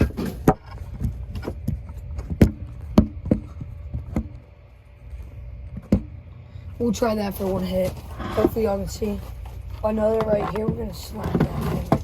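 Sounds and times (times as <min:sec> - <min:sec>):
hard objects knocking and clattering: 0:10.1 - 0:12.0.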